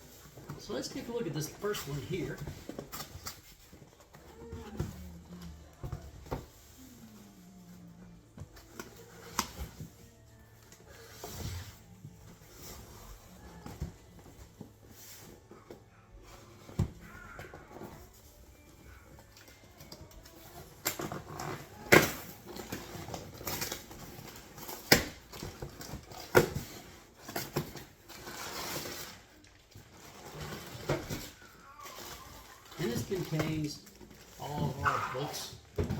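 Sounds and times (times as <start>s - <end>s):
packaging rustling: 18.0s - 35.8s.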